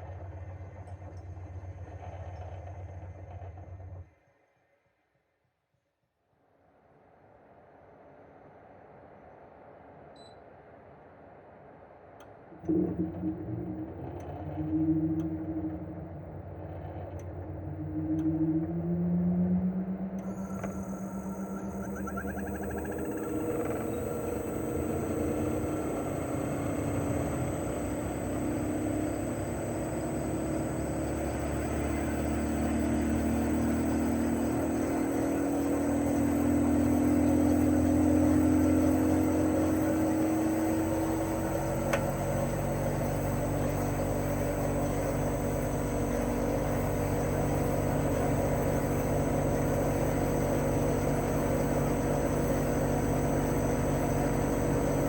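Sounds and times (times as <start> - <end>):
fan whirring: 11.1 - 55.0
compressor humming: 12.5 - 55.0.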